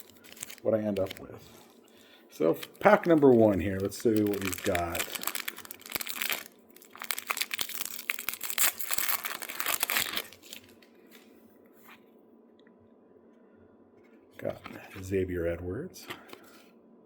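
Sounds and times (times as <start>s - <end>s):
card pack wrapper crinkling and tearing: 0.0s - 1.4s, 2.4s - 10.8s.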